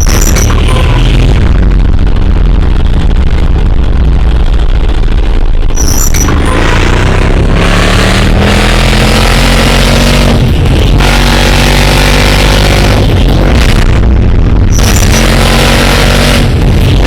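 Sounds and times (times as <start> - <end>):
loud road noise: 0.0 - 17.0
vehicle engine under load: 0.0 - 17.0.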